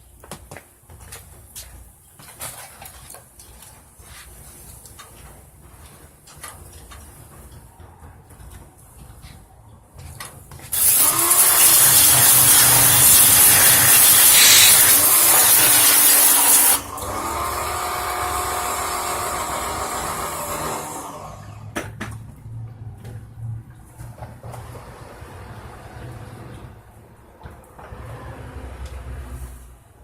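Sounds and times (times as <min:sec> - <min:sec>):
pressure washer spraying: 0:10.7 - 0:21.3
pump motor humming: 0:10.7 - 0:21.7.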